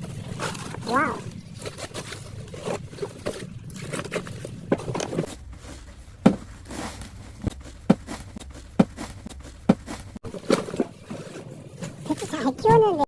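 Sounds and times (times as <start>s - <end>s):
footsteps: 1.7s - 10.2s.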